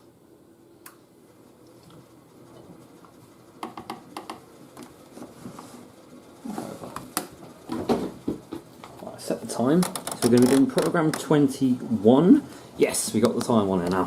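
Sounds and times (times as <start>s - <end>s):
washing machine controls clicking: 9.6s - 11.5s.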